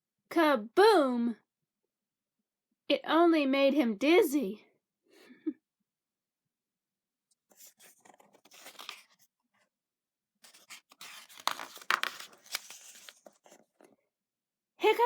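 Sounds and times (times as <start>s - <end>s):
paper pages rustling and turning: 7.3s - 9.4s, 10.4s - 14.0s.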